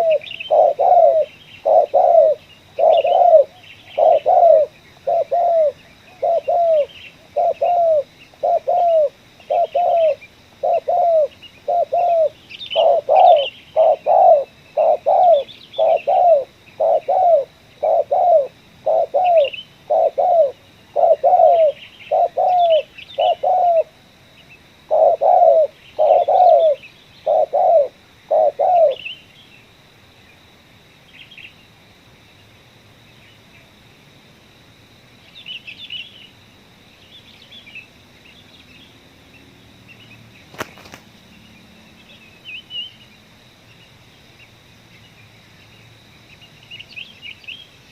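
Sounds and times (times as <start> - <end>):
dove cooing: 0.0 - 24.0, 24.9 - 29.1
small birds chirping: 0.0 - 33.7, 35.2 - 47.9.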